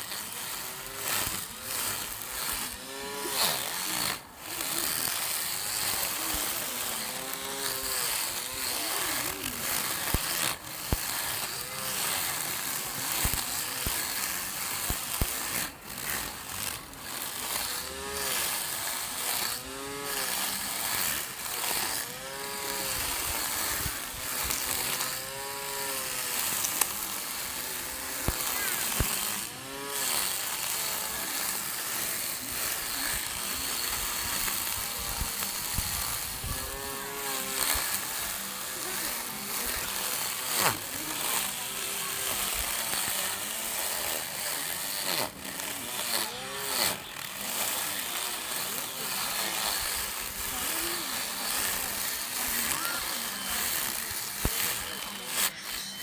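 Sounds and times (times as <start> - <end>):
hiss of grass cutting: 0.0 - 56.0
lawn mower motor whining: 0.0 - 56.0.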